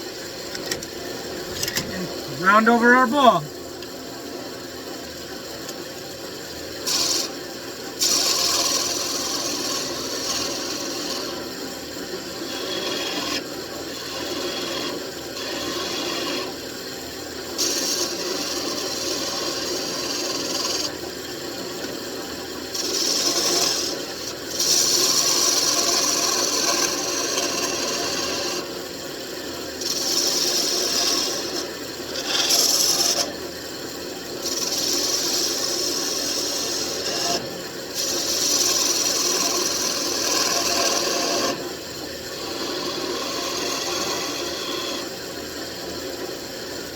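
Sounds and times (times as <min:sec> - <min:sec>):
chisel scraping spinning wood: 0:29.8 - 0:33.3, 0:34.4 - 0:37.4, 0:38.0 - 0:41.6.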